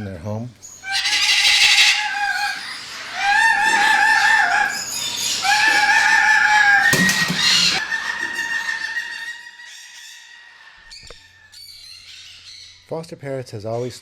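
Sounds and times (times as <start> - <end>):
parrot screaming: 0.7 - 11.5
parrot squawk: 0.8 - 11.3.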